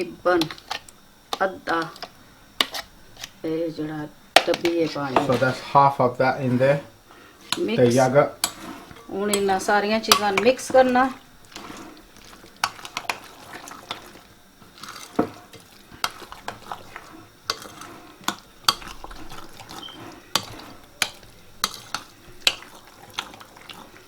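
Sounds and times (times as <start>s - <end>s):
spoon stirring wet mixture: 0.0s - 24.0s.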